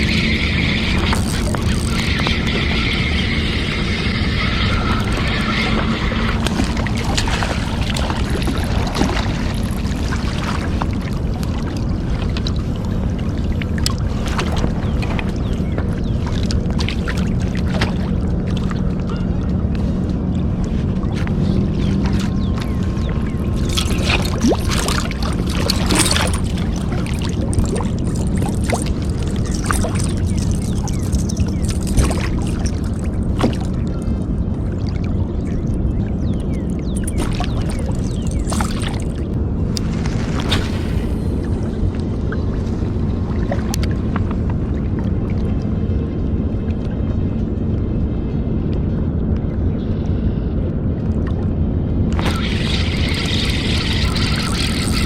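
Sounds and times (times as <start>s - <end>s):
river water rushing and gurgling: 0.0s - 35.6s, 52.0s - 55.0s
high hum: 0.0s - 55.0s
wind on microphone: 0.0s - 55.0s.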